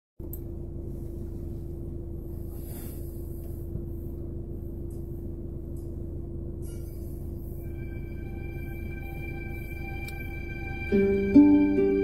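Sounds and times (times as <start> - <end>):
sustained music drone: 6.3 - 12.0.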